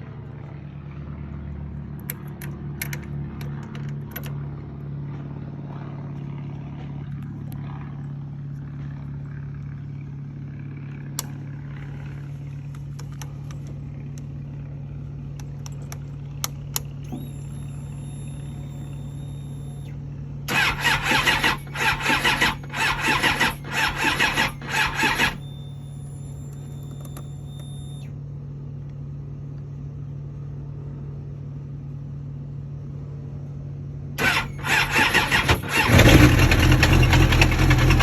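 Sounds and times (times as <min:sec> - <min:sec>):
motorcycle engine running: 0:20.5 - 0:25.5, 0:34.2 - 0:38.0.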